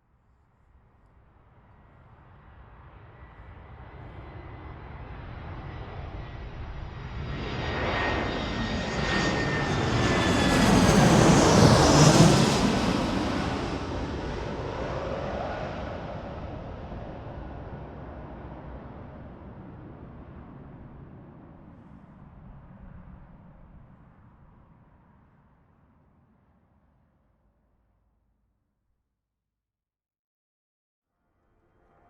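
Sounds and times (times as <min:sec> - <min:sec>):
airplane passing overhead: 0:01.3 - 0:25.9.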